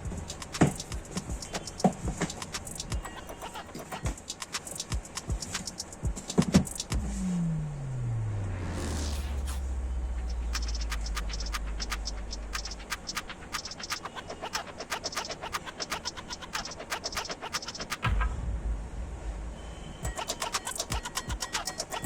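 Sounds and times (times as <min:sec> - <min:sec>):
rapid sharp clicking: 0:00.0 - 0:07.0, 0:10.2 - 0:18.1, 0:20.0 - 0:22.0
low hum: 0:06.9 - 0:13.4, 0:18.0 - 0:20.1
low thump: 0:18.1 - 0:19.4.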